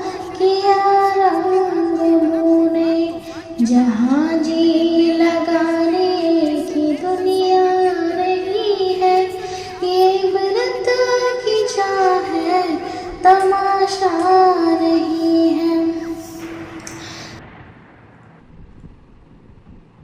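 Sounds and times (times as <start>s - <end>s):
wind noise: 16.2s - 20.0s.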